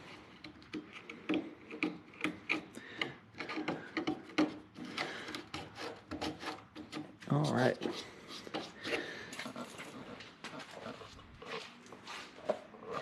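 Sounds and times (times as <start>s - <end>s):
scraping glue off plastic: 0.0s - 9.6s.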